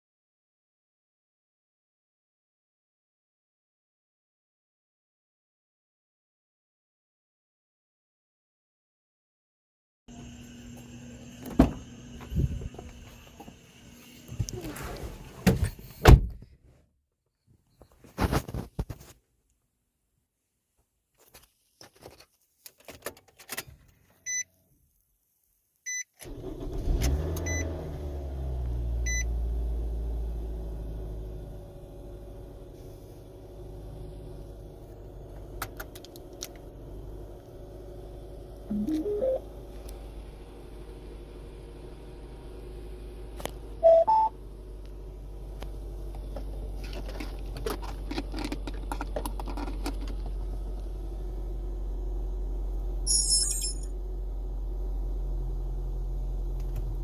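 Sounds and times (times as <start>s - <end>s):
car engine starting and idling: 26.2s - 53.1s, 53.8s - 57.0s
short electronic beeps: 38.7s - 39.4s, 43.8s - 44.3s, 53.1s - 53.9s
keys jingling: 53.1s - 53.9s
rising chirps: 53.1s - 53.9s.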